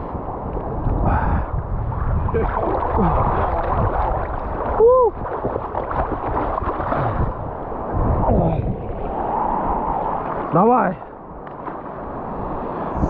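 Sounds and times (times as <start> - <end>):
seawater lapping in waves: 0.0 - 13.0
person crying out: 4.8 - 5.2.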